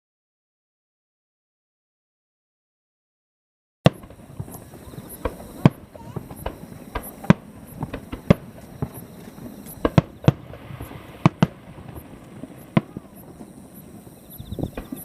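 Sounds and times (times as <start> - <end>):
distant fireworks bangs: 3.9 - 15.0.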